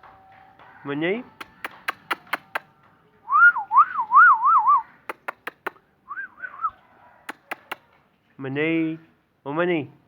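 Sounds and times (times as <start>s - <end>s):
bird sharp clicks: 1.4s - 2.7s, 5.0s - 5.8s, 7.3s - 7.8s.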